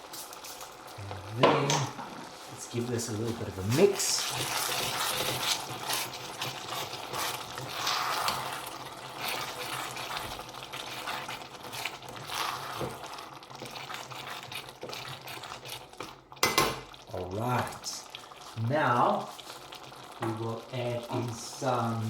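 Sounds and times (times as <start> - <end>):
spoon scraping meat in a pot: 3.7 - 16.6.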